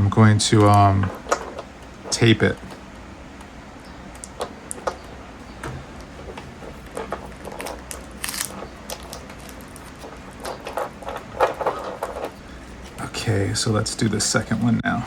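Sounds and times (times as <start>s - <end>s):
light clicks and rustling: 4.1s - 13.0s
tape ripping: 7.6s - 12.1s.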